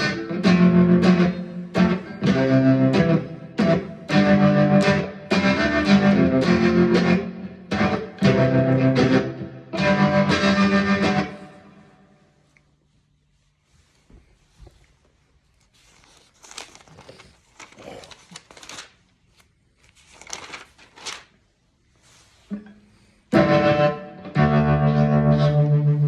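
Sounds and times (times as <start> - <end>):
strummed distorted guitar chords: 0.0 - 11.9, 23.3 - 26.0.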